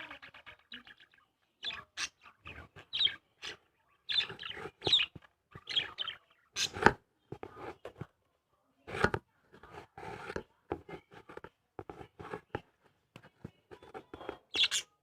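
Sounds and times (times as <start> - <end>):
faint bird chirps: 0.0 - 6.8, 14.0 - 15.0
birds scratching and rustling in cage: 2.5 - 6.0, 8.9 - 14.9.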